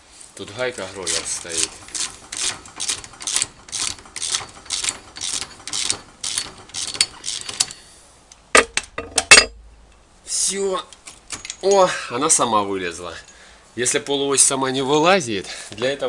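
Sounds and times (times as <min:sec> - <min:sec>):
ratchet wrench clicking: 0:01.1 - 0:07.8
sharp metallic knocks: 0:08.6 - 0:09.8.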